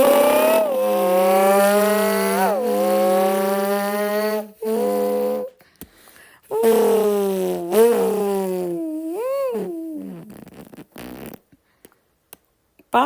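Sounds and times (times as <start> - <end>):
person imitating car engine: 0.0 - 5.6, 6.5 - 11.3.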